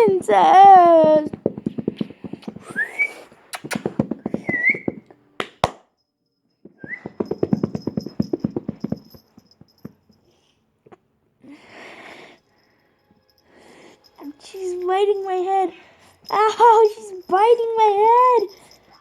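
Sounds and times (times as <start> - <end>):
sharp click: 3.5 - 4.4.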